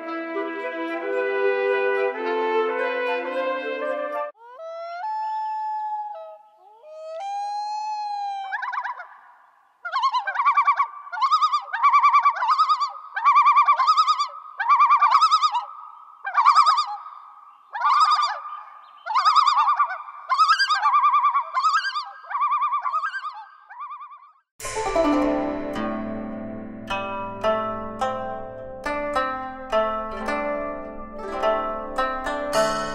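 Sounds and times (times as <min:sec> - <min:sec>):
bird warbling calls: 0:08.4 - 0:24.4.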